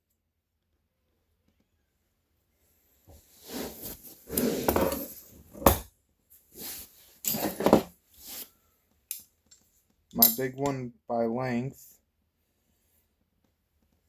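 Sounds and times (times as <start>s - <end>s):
butterfly knife clinking: 10.2s - 10.5s
sharp metal clack: 10.2s - 10.6s.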